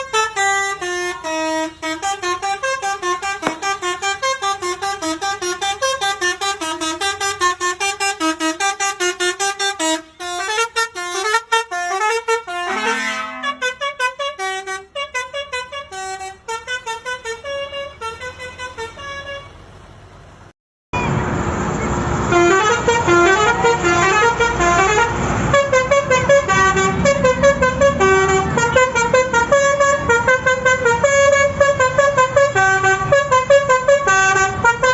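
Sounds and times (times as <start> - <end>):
multi-tone bus horn melody: 0.0 - 19.9, 22.2 - 34.9
low buzzy horn note: 12.3 - 13.9.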